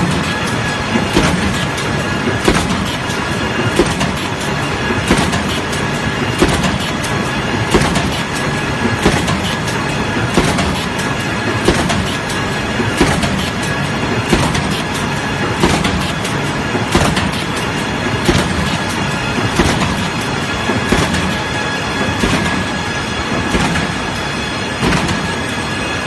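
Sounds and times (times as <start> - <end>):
machine clatter: 0.0 - 26.0
sharp repeating knock: 1.1 - 1.8, 2.4 - 3.1, 3.7 - 4.3, 5.0 - 5.7, 6.4 - 7.0, 11.6 - 12.4, 13.0 - 13.6, 14.3 - 14.8, 15.6 - 16.2, 16.9 - 17.6, 18.2 - 18.9, 19.5 - 20.1, 20.9 - 21.4, 23.5 - 24.0.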